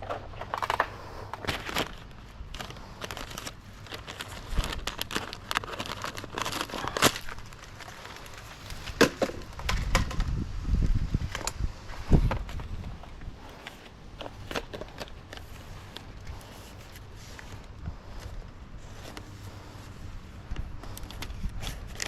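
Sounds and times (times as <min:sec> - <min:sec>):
paper rustling and crinkling: 0:00.0 - 0:10.3, 0:11.2 - 0:22.0
wind rumble on microphone: 0:08.8 - 0:13.6, 0:20.0 - 0:22.0.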